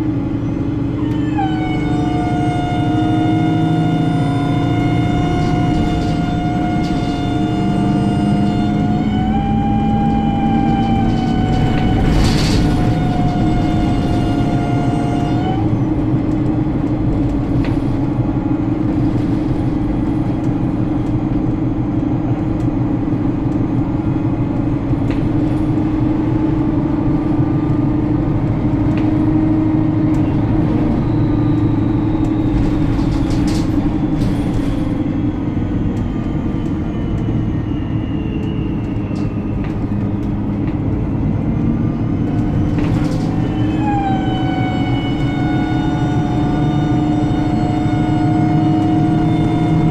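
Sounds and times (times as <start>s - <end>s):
bus engine and road drone: 0.0s - 49.9s
whine gliding down: 0.2s - 17.8s, 18.9s - 49.9s
high squeal falling in pitch: 0.4s - 15.9s, 29.4s - 40.5s, 42.1s - 49.9s
rattles: 0.5s - 37.3s, 38.5s - 49.9s.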